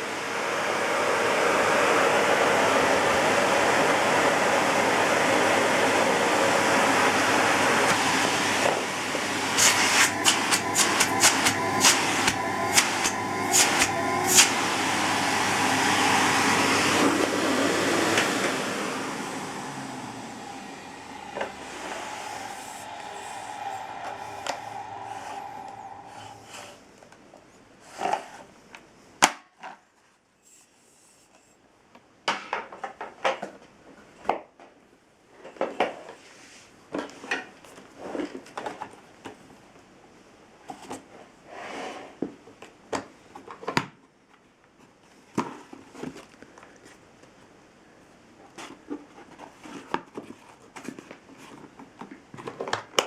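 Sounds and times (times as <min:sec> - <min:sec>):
vacuum cleaner motor: 0:00.0 - 0:26.8.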